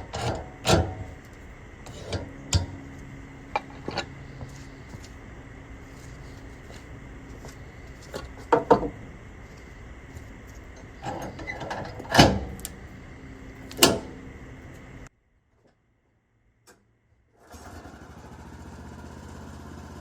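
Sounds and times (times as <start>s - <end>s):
sharp knocks or clanks: 0.0s - 5.1s, 8.1s - 9.0s
steady hum: 0.0s - 15.1s.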